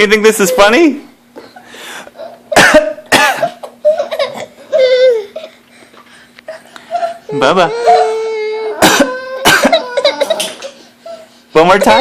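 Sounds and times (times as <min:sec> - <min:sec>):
man coughing: 0:02.5 - 0:04.5, 0:08.8 - 0:10.6
toddler laughing: 0:03.4 - 0:05.6, 0:08.8 - 0:12.0.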